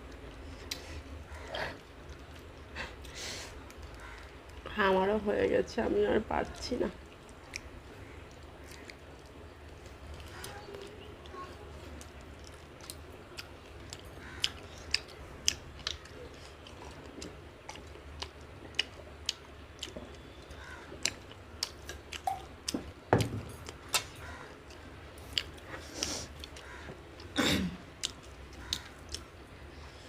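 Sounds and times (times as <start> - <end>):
chewing fried fish: 6.4 - 30.0.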